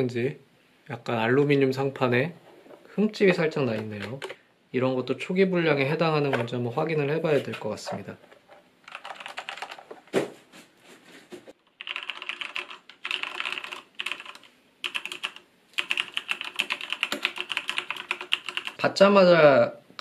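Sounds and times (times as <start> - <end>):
mechanical keyboard typing: 8.9 - 9.9, 11.7 - 18.8.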